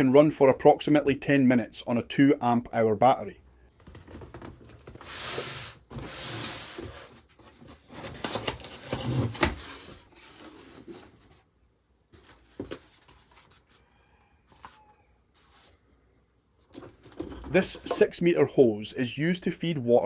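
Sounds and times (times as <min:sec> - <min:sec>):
rustling and rubbing handling: 0:03.7 - 0:11.5, 0:12.1 - 0:13.8, 0:14.5 - 0:15.8, 0:16.6 - 0:18.5.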